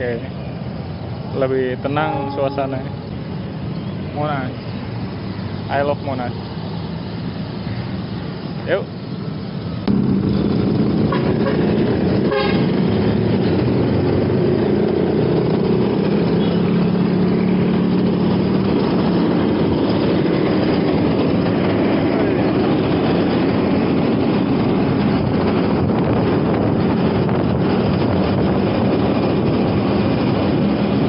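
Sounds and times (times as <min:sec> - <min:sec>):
passing traffic: 0:00.0 - 0:31.0
wind buffeting microphone: 0:09.4 - 0:31.0
horn toot: 0:11.1 - 0:12.8.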